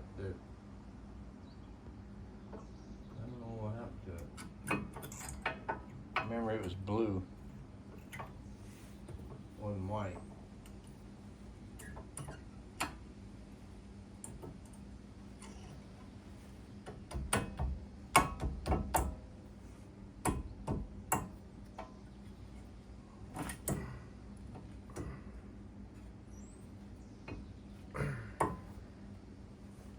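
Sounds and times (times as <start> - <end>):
faint steady hum: 0.0 - 29.9
brake parts clicking and knocking: 16.8 - 19.3, 20.2 - 22.0, 28.4 - 28.8.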